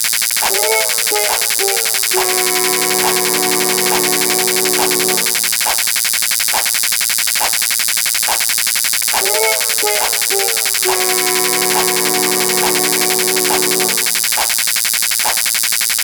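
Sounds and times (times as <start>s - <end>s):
short wavering melody: 0.4s - 6.0s, 9.2s - 14.6s
sustained synth tones: 0.4s - 6.0s, 9.1s - 14.6s
synthesized beat: 0.4s - 6.7s, 9.1s - 15.4s
high buzzing hiss: 0.4s - 6.8s, 7.4s - 15.5s.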